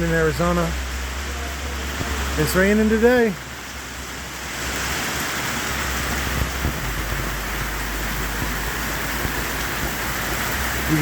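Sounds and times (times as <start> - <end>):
pouring rain: 0.0 - 11.0.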